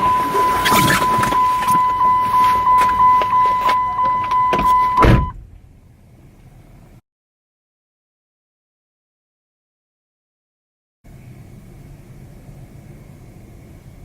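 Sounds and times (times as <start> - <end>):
car warning chime: 0.0 - 5.4
car door shutting: 0.0 - 5.5.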